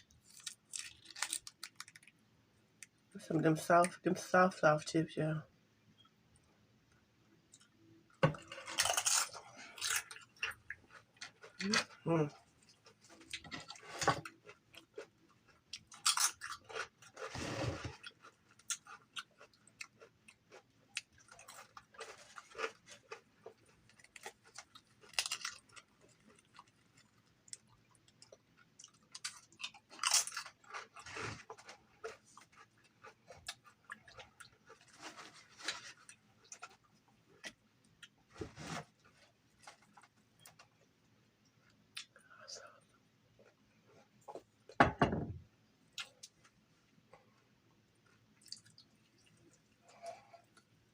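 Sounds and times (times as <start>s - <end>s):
person chewing crunchy food: 0.0s - 2.1s, 7.5s - 40.8s, 48.0s - 50.8s.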